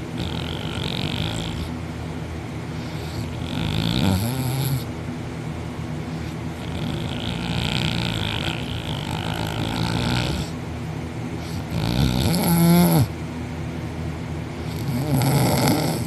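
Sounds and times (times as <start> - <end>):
man snoring heavily: 0.0 - 1.8, 2.8 - 4.9, 6.2 - 10.6, 11.4 - 13.1, 14.6 - 16.0.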